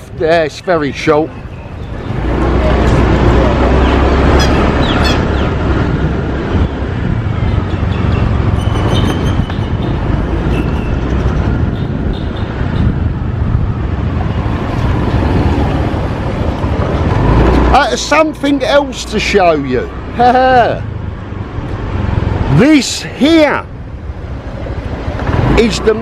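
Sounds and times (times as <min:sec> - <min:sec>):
traffic noise: 0:00.0 - 0:26.0
wind rumble on microphone: 0:01.6 - 0:17.7.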